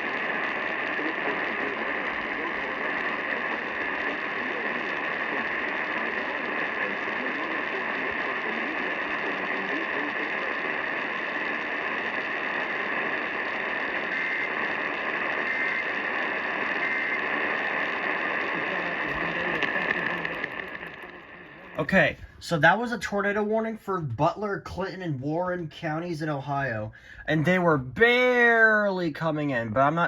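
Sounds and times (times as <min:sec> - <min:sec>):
faint data bursts: 0:00.0 - 0:23.6
radio static: 0:00.0 - 0:30.0
faint emergency alert voice: 0:18.4 - 0:23.2.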